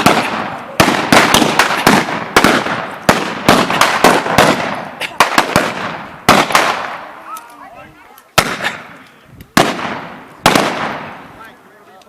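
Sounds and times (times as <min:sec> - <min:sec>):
gunshots with echo: 0:00.0 - 0:07.1, 0:09.6 - 0:11.2.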